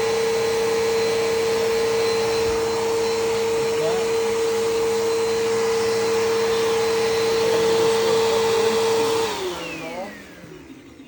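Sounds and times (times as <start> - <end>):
vacuum cleaner motor whine: 0.0 - 11.0.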